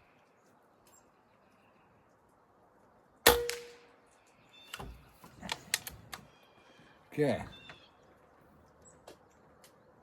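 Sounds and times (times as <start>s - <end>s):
air rifle shot: 3.3s - 3.8s.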